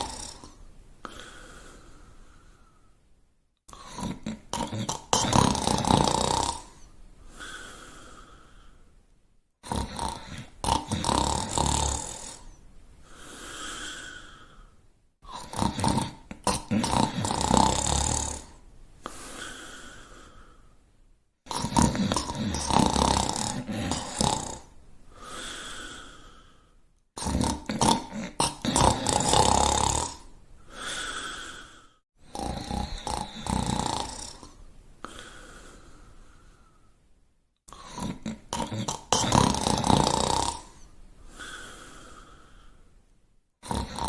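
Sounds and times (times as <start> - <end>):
loud rattling snoring: 0.0 - 0.6, 3.7 - 6.8, 9.6 - 12.5, 15.3 - 18.6, 21.5 - 24.7, 27.2 - 31.6, 32.2 - 34.6, 37.7 - 40.8, 43.6 - 44.0
breathy exhale: 1.0 - 3.0, 7.2 - 8.9, 19.0 - 20.8, 25.1 - 26.8, 30.6 - 32.0, 35.0 - 37.0, 40.8 - 42.9.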